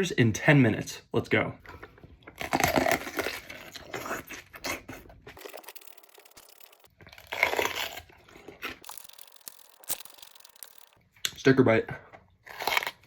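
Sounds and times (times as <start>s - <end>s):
crunching bites and chewing: 1.7s - 11.0s, 12.3s - 13.0s.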